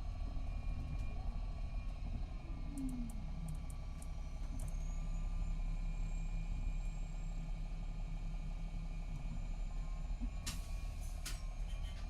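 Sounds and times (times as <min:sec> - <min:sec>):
diesel bus engine droning: 0:00.0 - 0:12.0.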